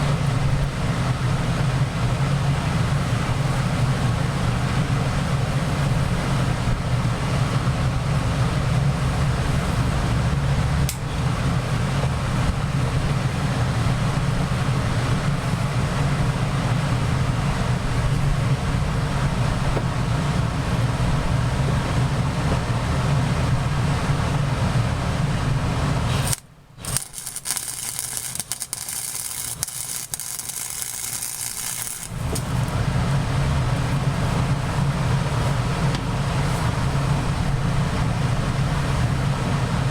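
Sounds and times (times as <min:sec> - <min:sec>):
welder arc buzzing: 0:26.1 - 0:32.9
crackling sizzle: 0:26.1 - 0:33.2.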